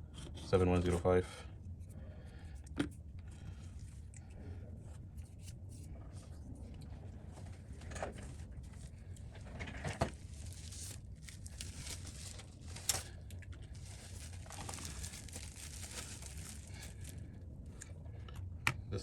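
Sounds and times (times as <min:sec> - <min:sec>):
plastic packaging crinkling: 0:10.0 - 0:17.4.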